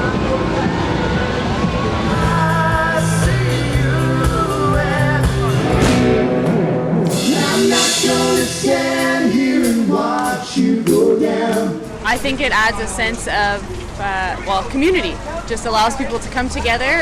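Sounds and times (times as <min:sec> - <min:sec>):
low bass part: 0:01.6 - 0:12.3
person singing: 0:02.0 - 0:05.9, 0:07.1 - 0:11.8.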